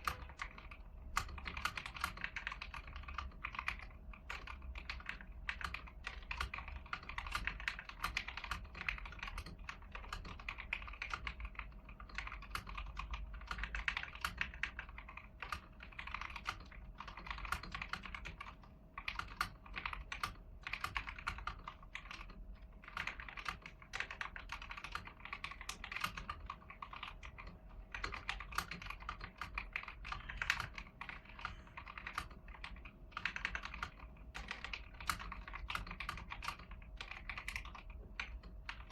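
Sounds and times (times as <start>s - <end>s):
mechanical keyboard key clacks: 31.8s - 38.9s.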